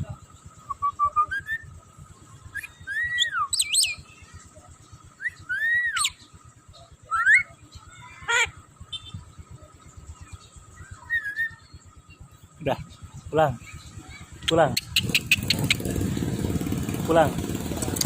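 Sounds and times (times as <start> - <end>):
bird whistled calls: 0.6 - 1.7, 2.5 - 4.1, 5.2 - 6.3, 7.1 - 7.6, 10.7 - 11.8, 14.4 - 15.9
bird harsh call: 13.6 - 16.7.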